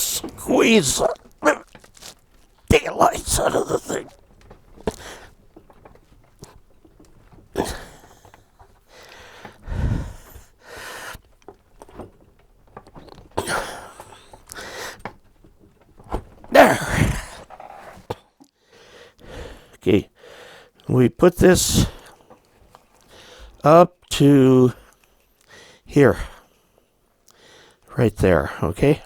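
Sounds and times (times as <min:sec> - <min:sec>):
breathy bursts of effort: 0:00.0 - 0:04.2, 0:04.8 - 0:05.4, 0:07.6 - 0:11.2, 0:13.4 - 0:15.1, 0:16.5 - 0:17.7
crimping tool handling noises: 0:00.0 - 0:09.6.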